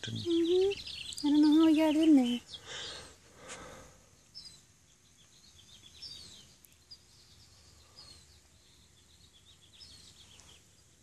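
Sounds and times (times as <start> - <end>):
faint high bird chirps: 0.0 - 11.0.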